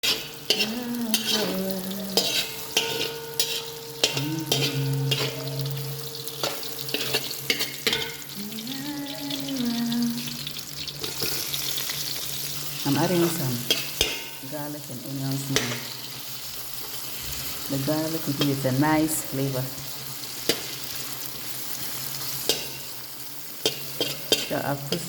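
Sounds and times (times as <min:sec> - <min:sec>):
sausages sizzling in a pan: 0:00.0 - 0:25.0
utensil knocking and scraping pan: 0:02.2 - 0:08.2.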